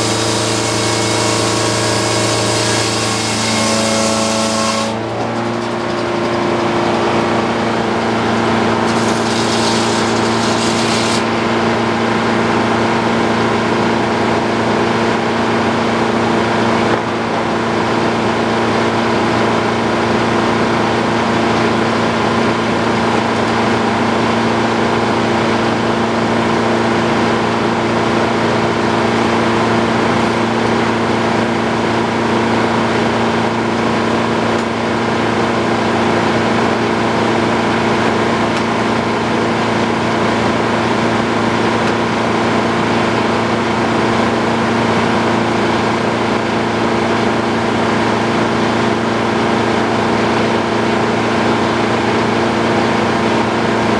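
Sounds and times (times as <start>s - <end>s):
sawmill engine and blade droning: 0.0s - 14.8s.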